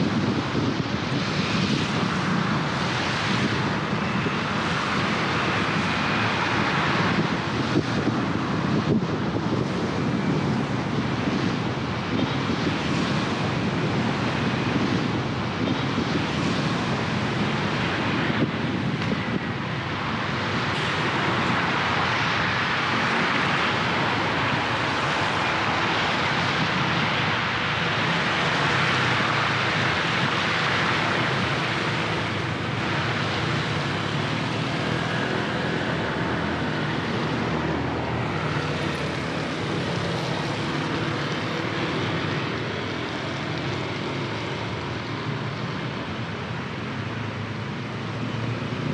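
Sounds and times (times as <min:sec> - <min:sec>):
low rumble of engines: 0:00.0 - 0:48.9
tyres hissing on wet road: 0:00.1 - 0:09.0, 0:16.0 - 0:48.9.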